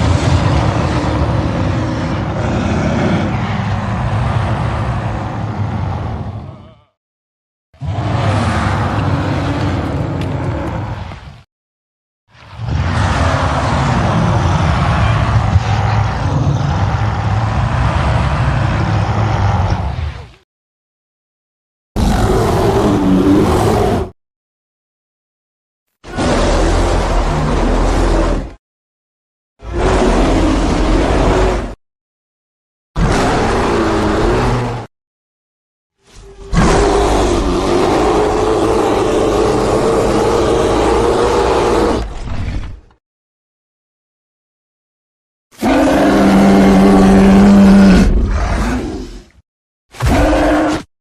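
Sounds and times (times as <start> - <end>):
bear growling: 0.0 - 7.0, 7.8 - 11.2, 12.5 - 20.4, 26.1 - 28.6, 29.6 - 31.8, 33.0 - 34.9, 36.2 - 42.7, 45.6 - 49.3.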